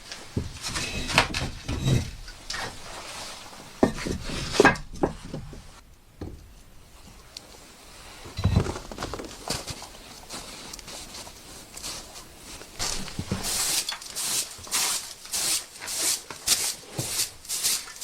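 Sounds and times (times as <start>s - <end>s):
rustling of objects: 0.0s - 18.0s
objects knocking and clattering: 0.3s - 7.4s, 8.2s - 11.5s.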